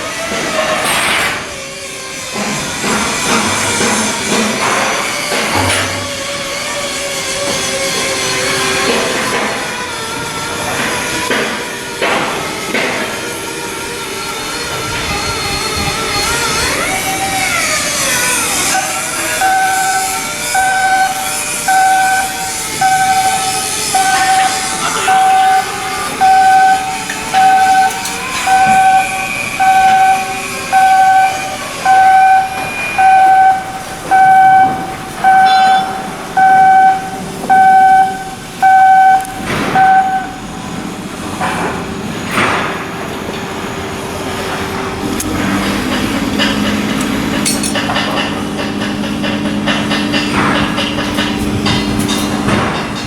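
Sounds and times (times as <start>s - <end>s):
steady machine hum: 14.3s - 53.0s
electronic warning beeps: 18.7s - 40.7s.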